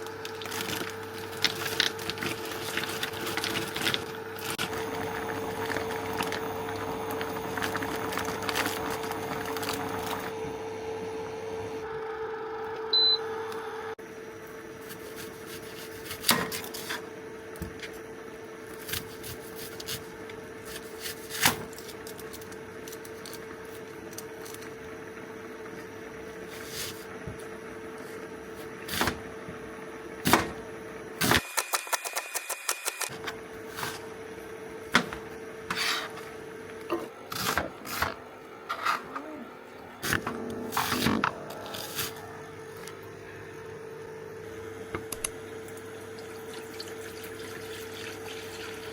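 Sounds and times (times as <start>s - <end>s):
steady appliance hum: 0.0s - 48.9s
high electronic beep: 12.9s - 13.2s.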